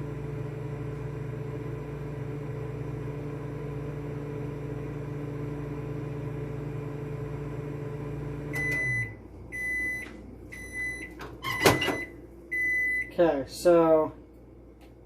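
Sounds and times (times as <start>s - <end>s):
microwave oven humming: 0.0s - 15.0s
short microwave beeps: 8.5s - 13.2s.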